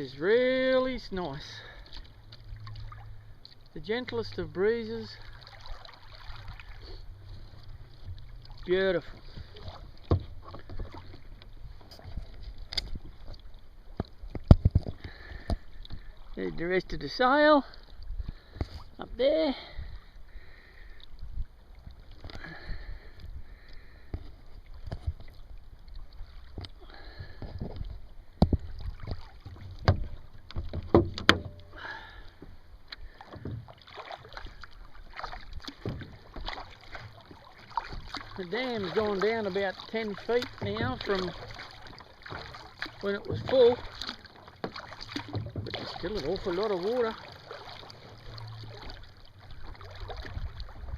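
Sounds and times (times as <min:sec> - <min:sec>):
water lapping against kayak hull: 0:00.0 - 0:50.9
sharp knocks and clicks: 0:29.5 - 0:31.7.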